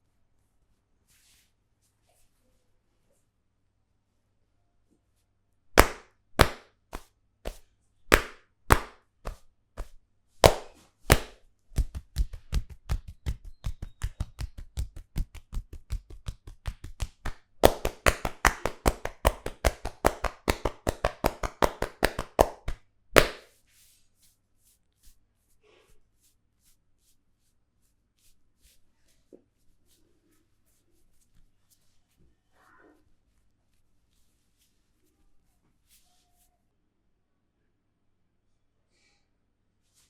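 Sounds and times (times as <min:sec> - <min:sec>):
hands striking a head: 0:05.8 - 0:23.5.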